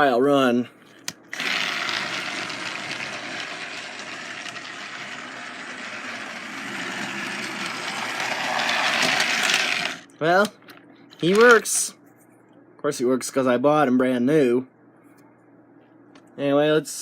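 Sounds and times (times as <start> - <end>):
toy train motor whirring: 1.3 - 10.1.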